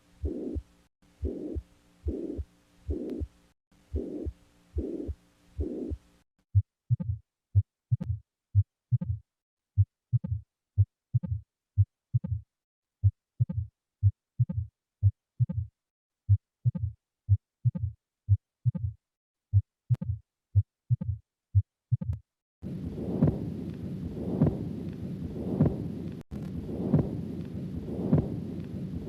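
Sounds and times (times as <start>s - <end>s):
heartbeat through stethoscope: 0.2s - 3.3s, 3.9s - 9.2s, 9.8s - 15.7s, 16.3s - 29.0s.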